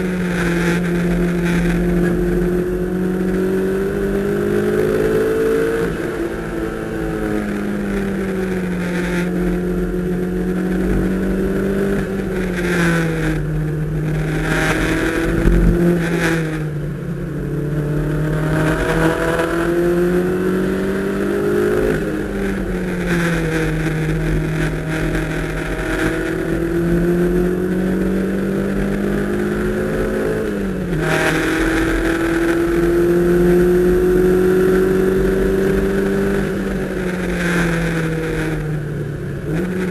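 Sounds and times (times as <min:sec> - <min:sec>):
car engine accelerating: 0:00.0 - 0:39.9
road and wind noise: 0:00.0 - 0:39.9.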